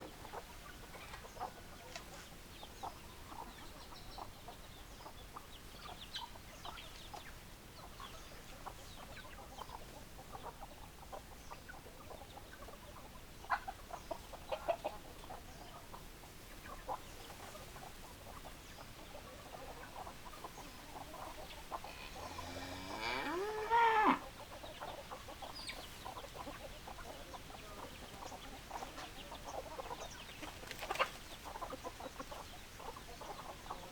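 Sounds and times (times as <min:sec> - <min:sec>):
chickens clucking: 0:00.0 - 0:33.9
drawn-out chicken call: 0:18.2 - 0:33.9.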